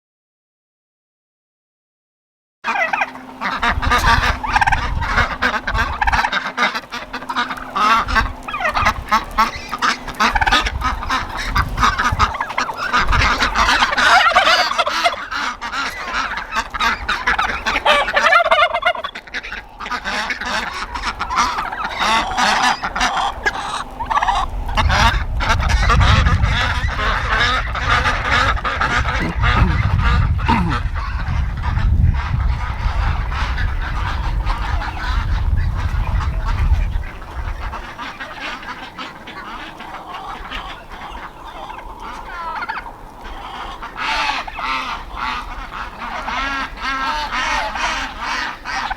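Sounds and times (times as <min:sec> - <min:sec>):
poultry calling: 0:02.6 - 0:48.9
low rumble: 0:03.3 - 0:18.4, 0:19.2 - 0:38.4.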